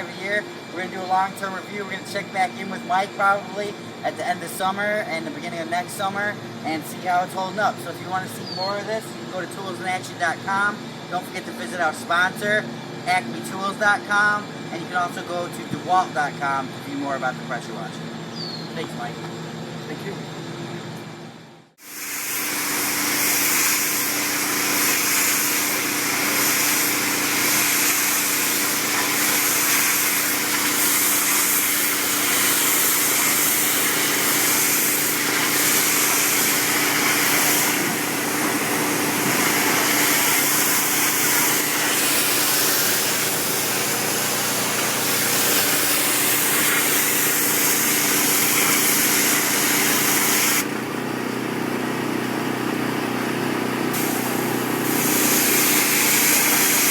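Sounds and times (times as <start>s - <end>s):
high-pressure water spray hiss: 21.8s - 50.8s, 53.9s - 56.9s
pressure washer engine running: 21.8s - 56.9s.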